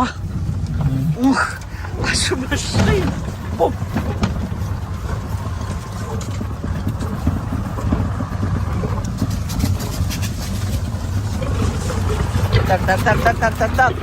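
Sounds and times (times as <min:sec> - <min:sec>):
car engine rumble: 0:00.0 - 0:14.0
car body knocks and rattles: 0:01.8 - 0:12.7.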